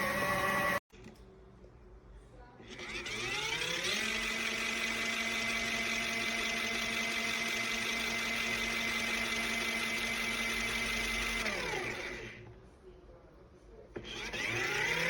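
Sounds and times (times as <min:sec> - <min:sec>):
small electric motor whining: 0:00.0 - 0:00.8, 0:02.7 - 0:12.4, 0:14.0 - 0:15.0.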